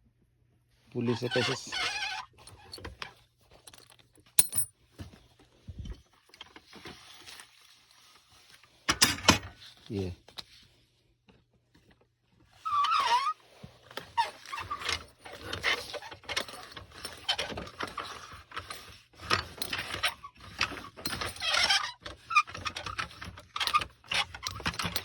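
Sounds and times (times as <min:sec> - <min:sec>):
pulley wheel squeak: 0:01.1 - 0:02.8, 0:12.6 - 0:13.4, 0:19.7 - 0:25.0
pulley rattling scrapes: 0:01.1 - 0:04.2, 0:12.6 - 0:25.0.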